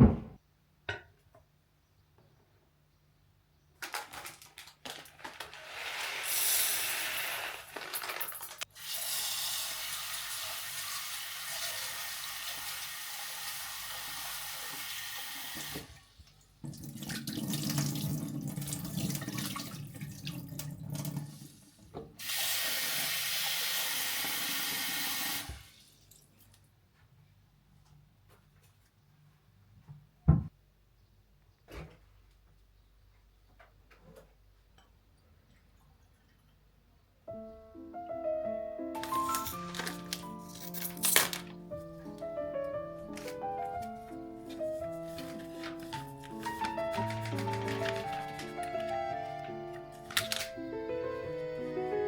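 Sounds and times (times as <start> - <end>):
tap water running into sink: 8.8 - 16.0, 16.6 - 21.4, 22.2 - 25.7.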